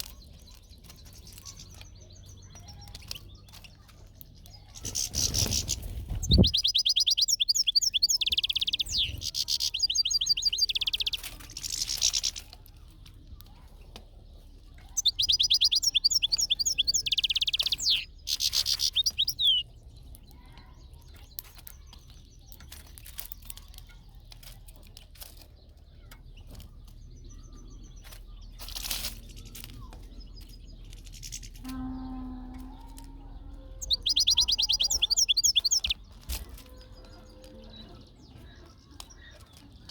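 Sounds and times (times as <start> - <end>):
bird twittering song: 0.0 - 39.9.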